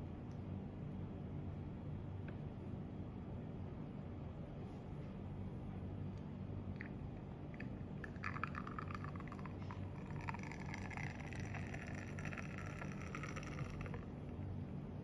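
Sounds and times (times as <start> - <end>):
coffee machine hum: 0.0 - 15.0
espresso sputtering: 6.7 - 14.4.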